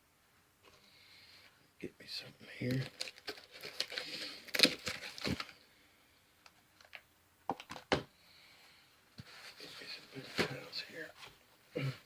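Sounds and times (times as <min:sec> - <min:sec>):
rustling: 0:02.6 - 0:05.6, 0:08.6 - 0:11.5.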